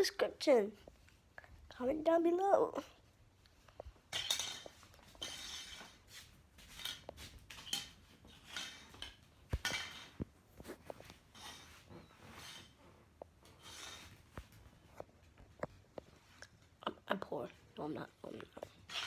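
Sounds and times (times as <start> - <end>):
rustling scrapes: 3.7 - 16.4
small hard objects clinking: 4.0 - 10.2.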